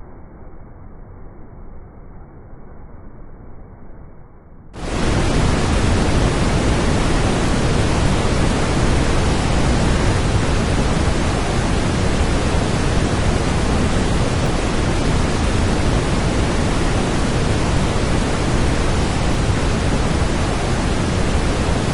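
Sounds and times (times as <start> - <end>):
waterfall rushing: 4.8 - 21.9.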